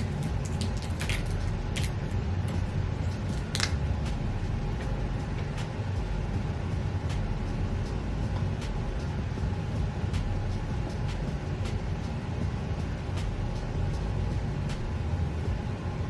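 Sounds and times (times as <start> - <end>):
chewing chocolate: 0.0 - 3.8.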